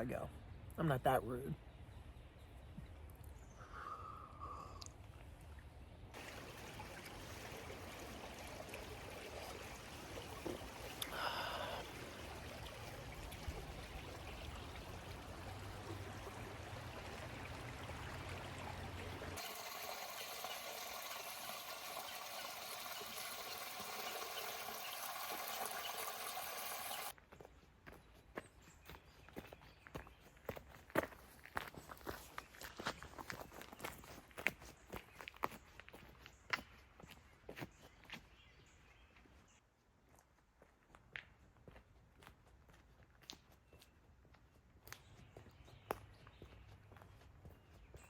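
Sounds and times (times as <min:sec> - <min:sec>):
creek water flowing: 0:03.6 - 0:27.2.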